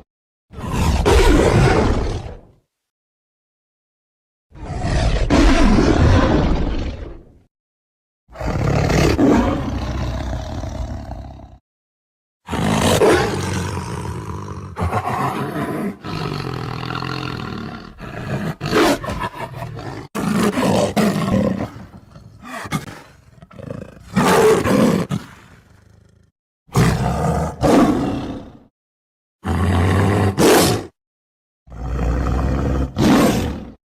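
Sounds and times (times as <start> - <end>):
lion roaring: 0.6 - 2.5, 4.6 - 7.4, 8.3 - 11.6, 12.5 - 28.6, 29.4 - 30.9, 31.7 - 33.8.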